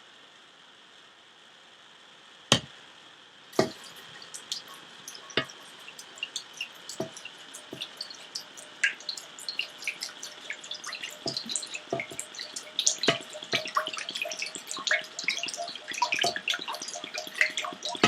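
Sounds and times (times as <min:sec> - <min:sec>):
sharp knock: 0:02.5 - 0:02.8
water pouring and splashing: 0:03.6 - 0:18.0.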